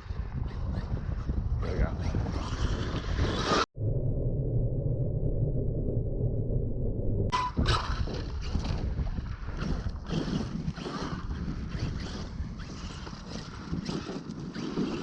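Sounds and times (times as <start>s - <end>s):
wind buffeting microphone: 0.0s - 3.6s, 7.3s - 15.0s
toy truck tyres crunching over dirt: 7.6s - 15.0s.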